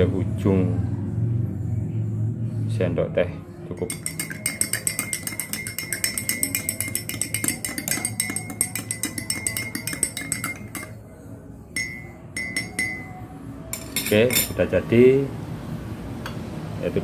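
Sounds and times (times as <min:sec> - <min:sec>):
metal spoon clinking in glass: 0:03.7 - 0:11.0, 0:11.8 - 0:14.6.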